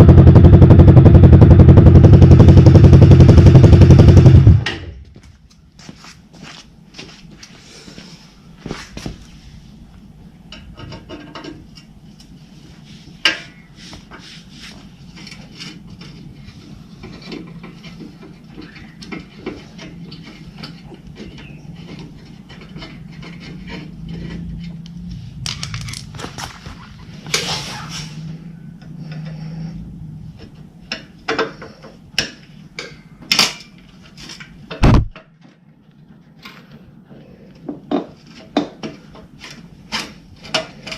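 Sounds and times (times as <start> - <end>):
motorcycle engine idling: 0.0 - 4.6
heavy thump: 34.8 - 35.2.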